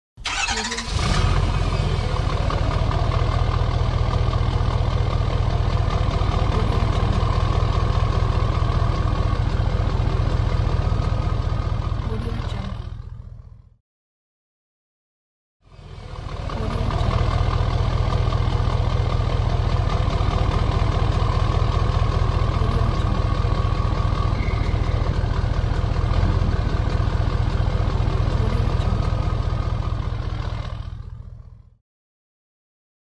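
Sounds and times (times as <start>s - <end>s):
diesel engine idling: 0.2s - 13.8s, 15.7s - 31.8s.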